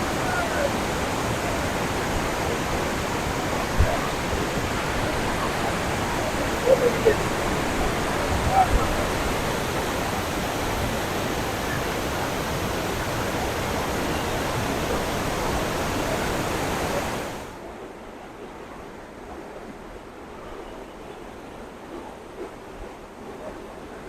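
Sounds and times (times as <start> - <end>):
waterfall rushing: 0.0 - 17.6.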